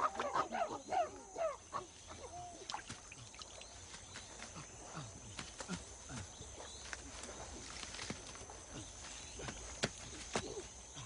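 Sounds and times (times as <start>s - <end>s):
chimpanzees calling: 0.0s - 2.7s.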